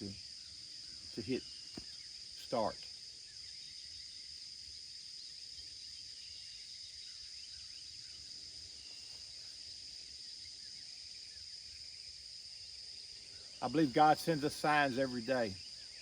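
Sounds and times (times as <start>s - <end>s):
faint bird chirps: 0.0s - 12.2s
insects buzzing: 0.0s - 16.0s.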